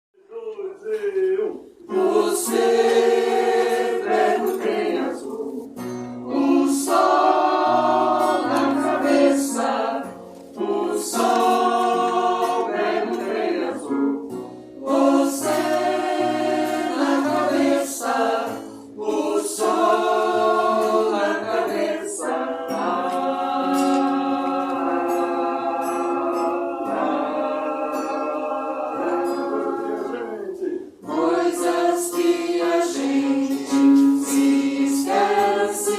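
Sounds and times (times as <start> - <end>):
choir singing in harmony: 1.8 - 35.9.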